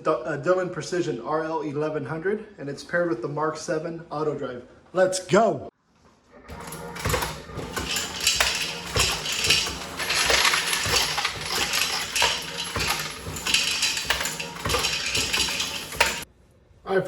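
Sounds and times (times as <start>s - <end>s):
brass cases clinking and clattering: 6.5s - 16.3s.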